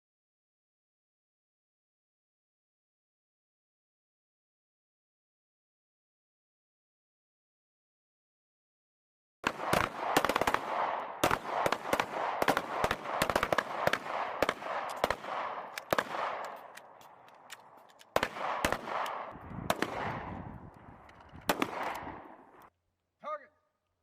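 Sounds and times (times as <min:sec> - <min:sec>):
pistol shots with echo: 0:09.4 - 0:20.6, 0:21.4 - 0:22.6.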